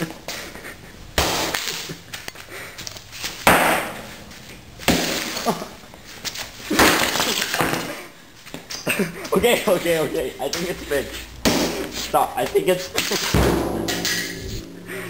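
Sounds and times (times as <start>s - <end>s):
hard crashing blows: 13.2s - 15.0s.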